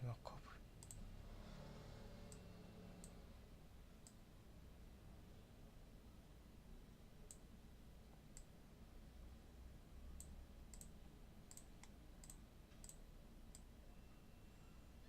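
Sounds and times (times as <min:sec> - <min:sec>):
quiet room hum: 0:00.0 - 0:15.0
computer mouse clicks: 0:00.8 - 0:01.1, 0:02.3 - 0:03.2, 0:04.0 - 0:04.2, 0:07.3 - 0:07.5, 0:08.1 - 0:08.5, 0:10.2 - 0:13.7.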